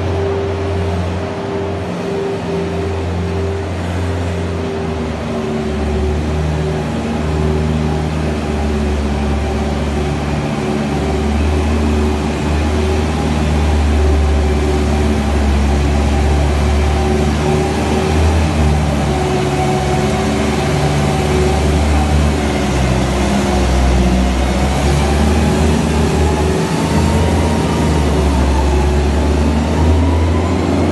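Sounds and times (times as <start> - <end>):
loader engine running: 0.0 - 30.9.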